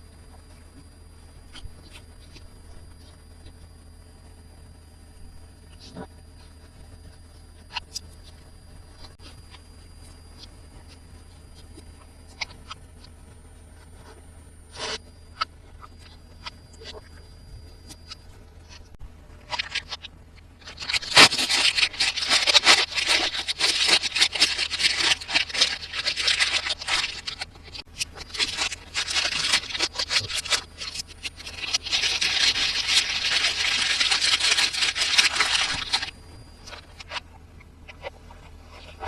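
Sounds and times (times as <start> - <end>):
packaging crackling and scraping: 14.0 - 17.2, 17.8 - 37.3.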